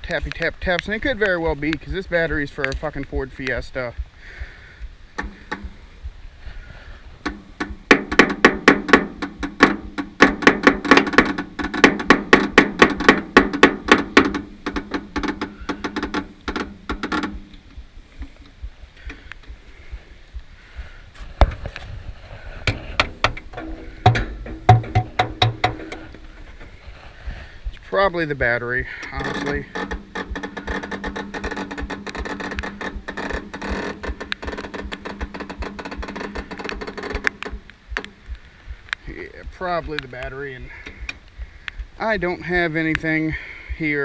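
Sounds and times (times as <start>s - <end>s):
metallic knocks on solenoid: 7.2s - 17.6s, 22.7s - 26.2s.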